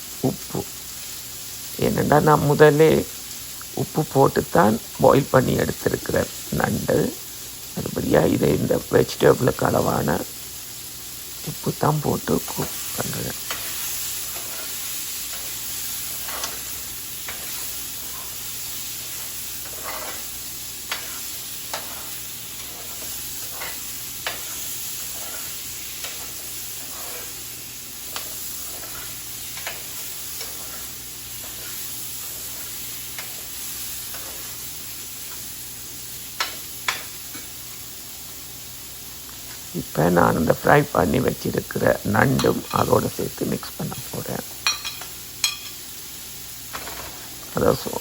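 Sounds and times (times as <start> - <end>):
vegetables sizzling in pan: 0.0 - 48.0
utensil clacking against pan: 44.6 - 45.8.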